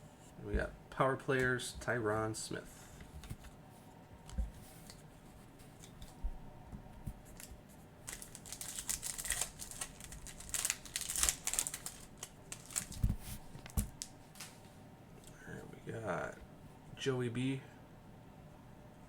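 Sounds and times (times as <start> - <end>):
foil wrapper crinkling and tearing: 7.3 - 14.6.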